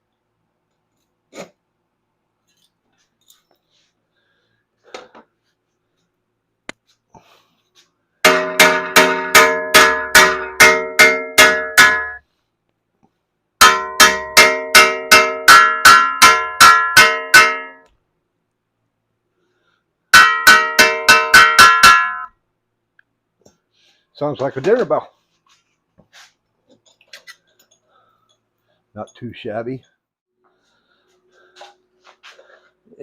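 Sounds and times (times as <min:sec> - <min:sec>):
hammer ringing on steel: 0:08.2 - 0:12.2, 0:13.6 - 0:17.9, 0:20.1 - 0:22.4.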